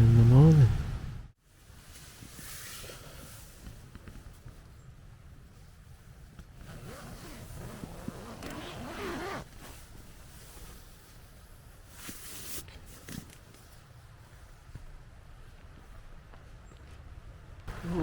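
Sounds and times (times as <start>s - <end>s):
steady low rumble: 0.0s - 1.4s
zip being drawn: 6.7s - 9.5s.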